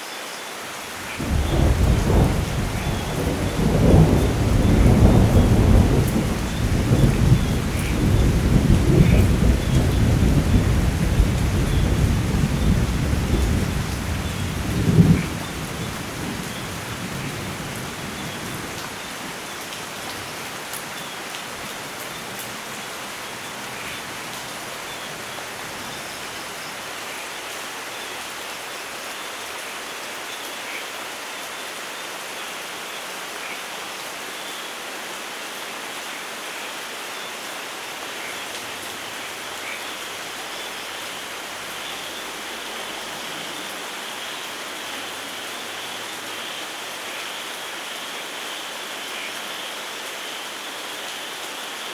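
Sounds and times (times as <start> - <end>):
heavy rain hissing: 0.0 - 51.9
low rumble of thunder: 1.2 - 18.9.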